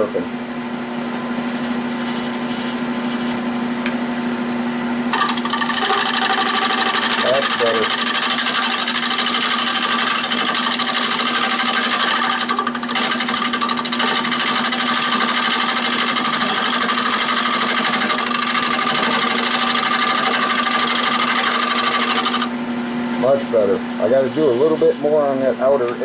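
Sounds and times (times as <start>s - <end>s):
lathe humming: 1.0s - 4.0s, 5.1s - 22.6s
gouge cutting wood: 5.1s - 22.5s.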